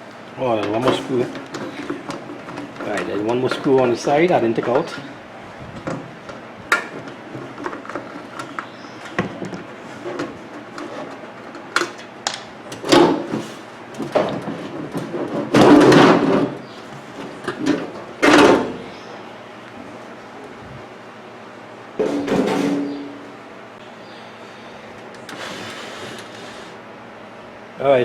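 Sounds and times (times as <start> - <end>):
casing scraping: 25.2 - 26.8.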